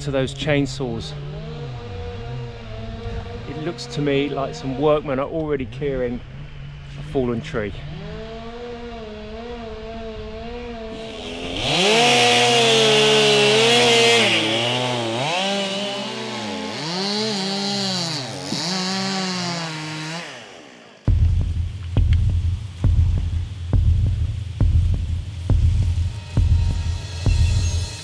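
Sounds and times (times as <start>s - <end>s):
chainsaws cutting timber: 10.9s - 28.0s
low throbbing hum: 21.1s - 28.0s.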